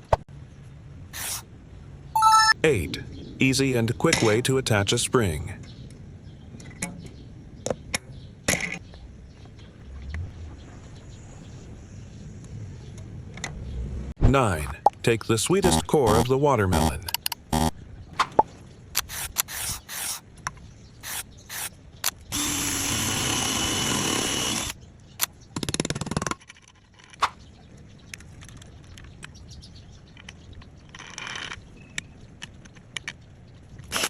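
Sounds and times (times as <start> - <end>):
scraping cutting noise: 1.2 - 1.4, 19.0 - 20.2, 21.0 - 21.7
power tool running: 22.3 - 24.8.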